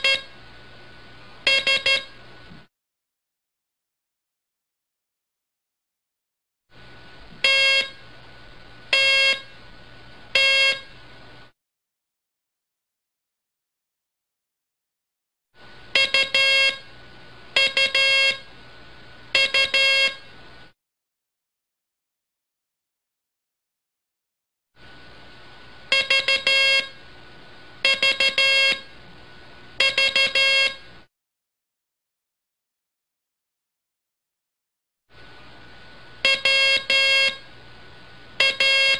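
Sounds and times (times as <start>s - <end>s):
buzzy morse code beeps: 0.0s - 0.3s, 1.5s - 2.1s, 7.4s - 8.0s, 8.9s - 9.5s, 10.4s - 10.9s, 16.0s - 16.8s, 17.6s - 18.5s, 19.4s - 20.2s, 25.9s - 27.0s, 27.8s - 28.9s, 29.8s - 30.9s, 36.2s - 37.4s, 38.4s - 38.9s
faint steady hiss: 6.7s - 11.5s, 35.1s - 38.9s.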